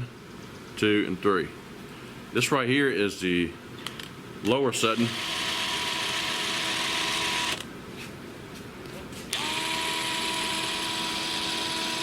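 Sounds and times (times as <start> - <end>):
impact wrench motor whine: 5.0 - 7.7, 9.3 - 12.0.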